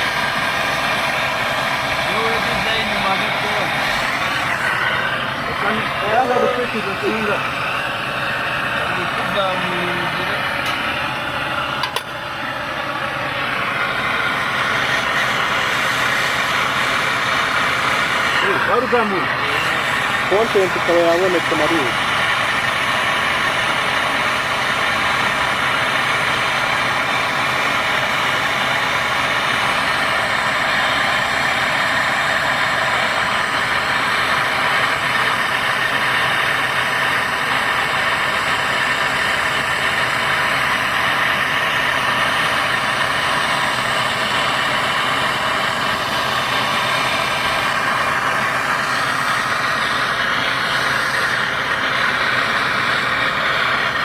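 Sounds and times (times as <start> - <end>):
torch flame hissing: 0.0 - 54.0.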